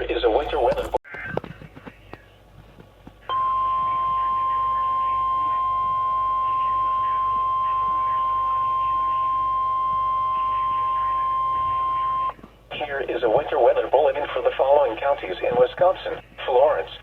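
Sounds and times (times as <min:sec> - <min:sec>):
high-pitched alarm tone: 0:03.3 - 0:12.4.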